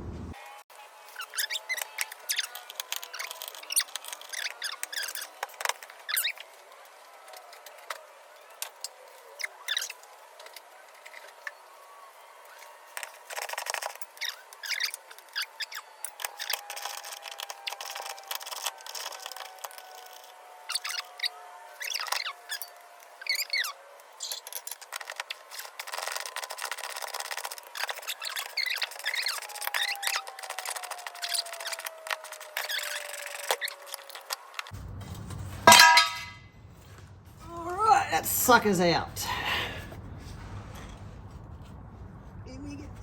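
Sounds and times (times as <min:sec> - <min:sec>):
high squeaks and squeals: 0:01.1 - 0:06.6, 0:08.7 - 0:11.7, 0:12.4 - 0:39.0
hand tools clicking and scraping: 0:01.2 - 0:06.6, 0:12.5 - 0:39.4.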